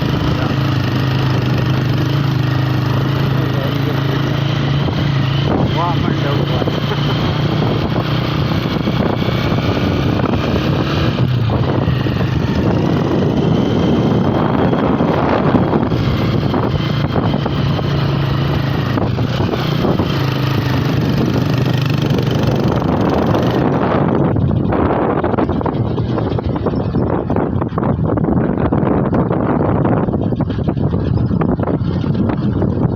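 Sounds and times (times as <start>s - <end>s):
motorcycle engine running: 0.0s - 32.9s
road noise rushing: 0.0s - 32.9s.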